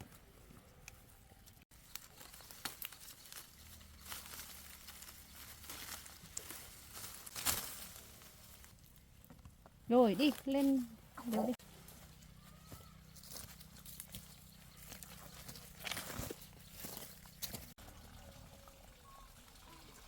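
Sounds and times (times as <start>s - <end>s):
rustling and crinkling: 0.0s - 17.8s.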